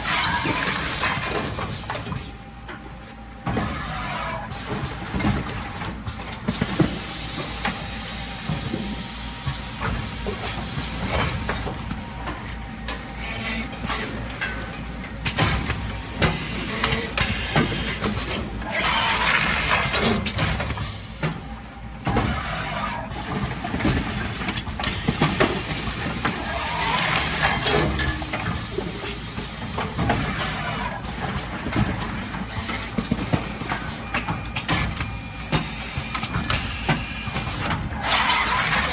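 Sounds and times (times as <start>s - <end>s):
packing machine clicking and knocking: 4.5s - 7.8s, 14.1s - 22.4s, 23.1s - 38.9s.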